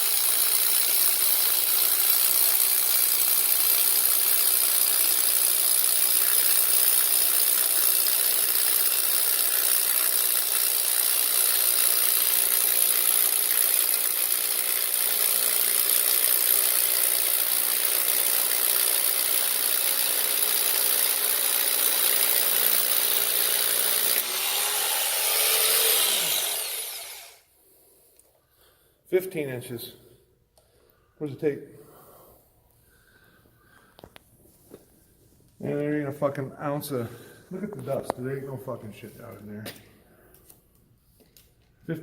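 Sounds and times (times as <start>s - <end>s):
power drill boring into concrete: 0.0s - 27.4s.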